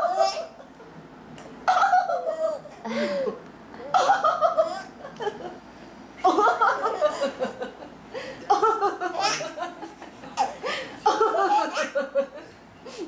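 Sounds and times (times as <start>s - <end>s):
baby laughing: 0.0s - 0.6s, 3.8s - 5.0s, 8.5s - 12.2s.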